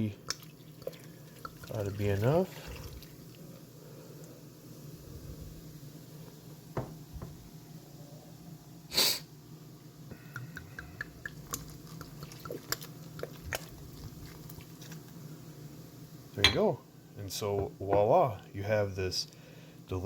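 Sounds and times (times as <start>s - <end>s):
beer pouring from bottle: 0.2s - 3.4s
sharp hiss: 8.9s - 9.3s.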